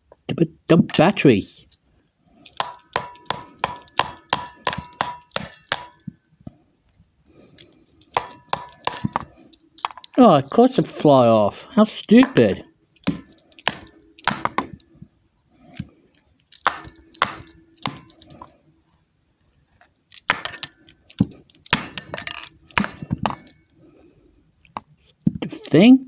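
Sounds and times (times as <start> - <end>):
small hard objects knocking: 2.5 - 6.2, 7.4 - 10.2, 12.1 - 14.8, 16.5 - 18.5, 20.1 - 23.6.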